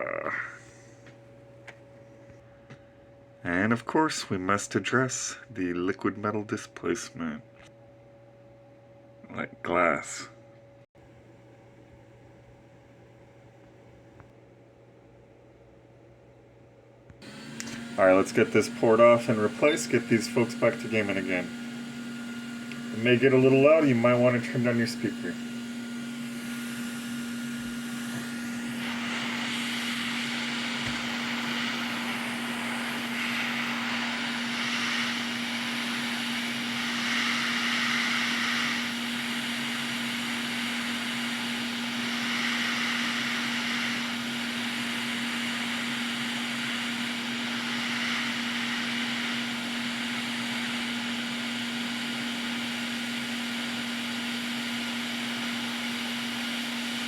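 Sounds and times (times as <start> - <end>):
hot air gun blowing: 17.2 - 54.0.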